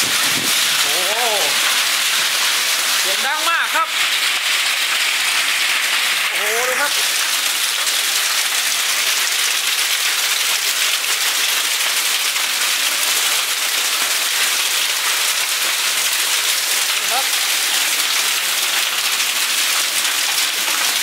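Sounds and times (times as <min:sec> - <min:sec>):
hail and heavy rain pelting: 0:00.0 - 0:21.0.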